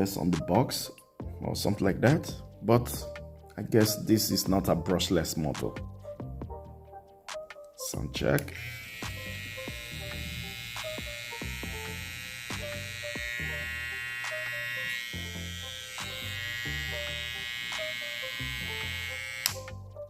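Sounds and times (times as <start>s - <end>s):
hair trimmer buzzing: 8.4s - 19.8s.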